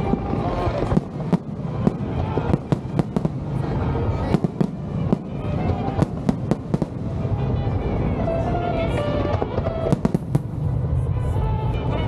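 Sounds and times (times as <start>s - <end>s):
fireworks bangs: 0.0s - 12.0s
low rumble: 0.0s - 12.0s.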